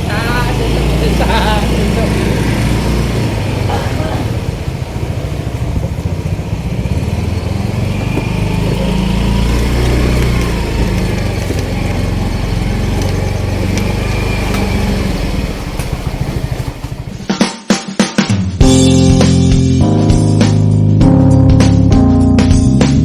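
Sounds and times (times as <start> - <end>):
small motorcycle engine running: 0.0 - 17.3.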